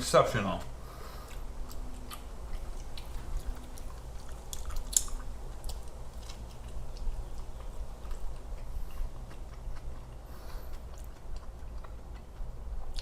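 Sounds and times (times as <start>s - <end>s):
small crunches: 0.6s - 11.9s
person chewing: 0.6s - 13.0s
wet mouth smacks: 4.2s - 5.9s.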